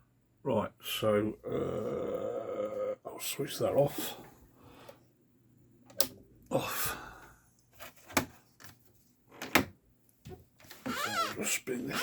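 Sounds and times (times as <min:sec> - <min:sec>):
breathy sigh: 0:06.5 - 0:07.4.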